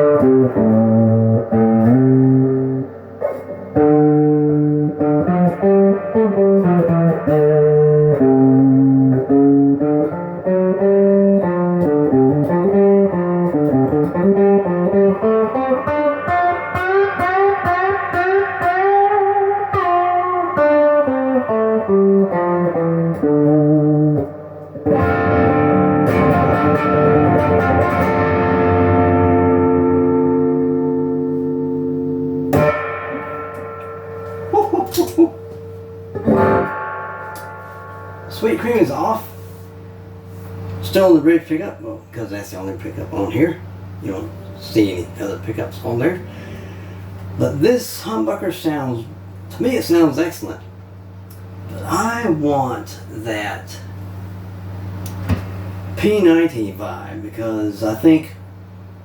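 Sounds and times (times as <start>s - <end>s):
distorted electric guitar: 0.0s - 40.9s.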